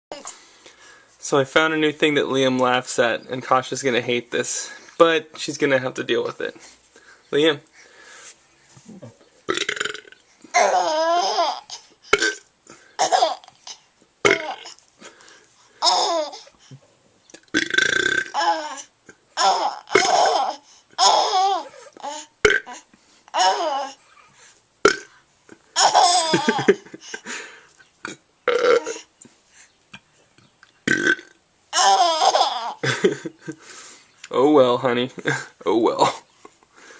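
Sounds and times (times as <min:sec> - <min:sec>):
adult burping: 0:08.9 - 0:10.7, 0:12.1 - 0:13.4, 0:14.2 - 0:14.8, 0:17.4 - 0:19.2, 0:19.9 - 0:20.5, 0:22.0 - 0:22.8, 0:24.8 - 0:26.8, 0:28.0 - 0:29.1, 0:30.8 - 0:33.2
baby laughing: 0:10.5 - 0:11.9, 0:13.0 - 0:14.8, 0:15.8 - 0:16.5, 0:18.3 - 0:24.0, 0:25.7 - 0:27.2, 0:31.7 - 0:33.1.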